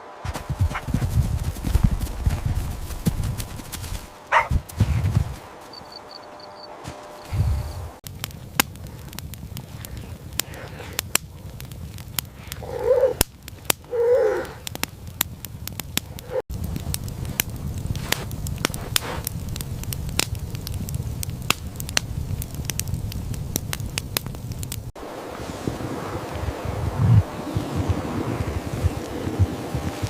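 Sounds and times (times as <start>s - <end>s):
low steady rumble: 0.0s - 12.4s
fire crackling and popping: 0.2s - 6.1s, 7.2s - 30.0s.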